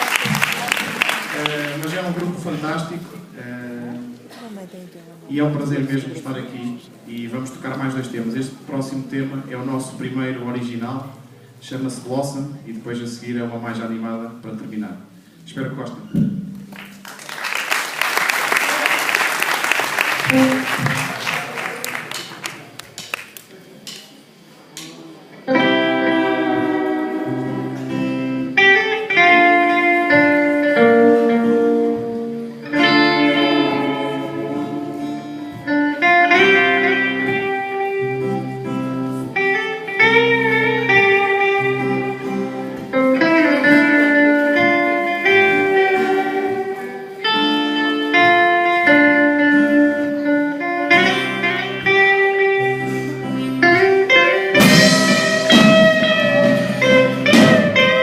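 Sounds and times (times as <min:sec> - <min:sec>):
guitar playing chords: 0:15.1 - 0:17.4, 0:19.1 - 0:22.8, 0:25.4 - 0:58.0.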